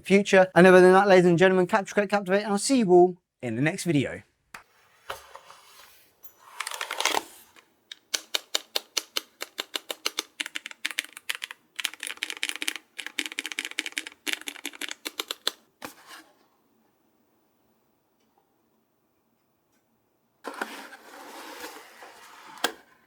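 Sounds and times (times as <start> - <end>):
rapid typing on mechanical keyboard: 8.1 - 15.6.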